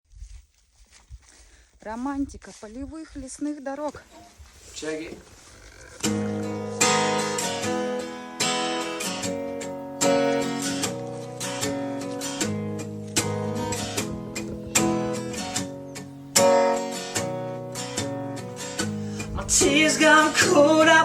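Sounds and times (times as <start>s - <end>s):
acoustic guitar chords ringing: 6.0s - 21.0s.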